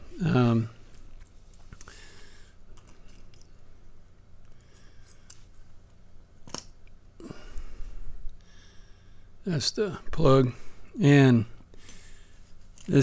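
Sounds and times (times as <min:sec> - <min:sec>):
small metal lock parts clinking: 0:04.6 - 0:05.6.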